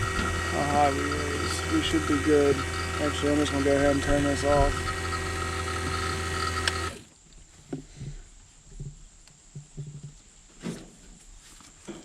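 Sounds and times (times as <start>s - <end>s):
vacuum pump hum: 0.0s - 7.1s.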